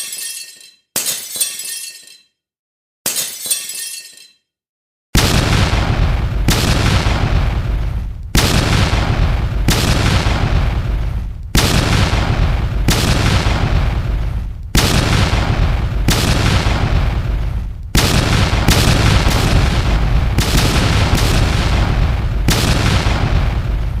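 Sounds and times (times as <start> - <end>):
loud booms with deep rumble: 5.2 - 24.0.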